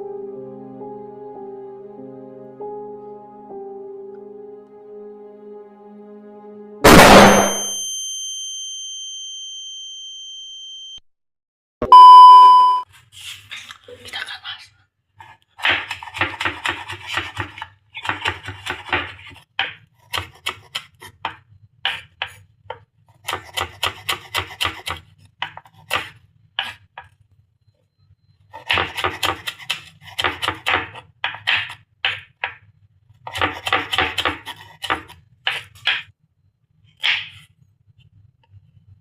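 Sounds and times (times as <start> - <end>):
knife chopping on cutting board: 15.6 - 27.1, 28.6 - 32.6, 33.3 - 36.1.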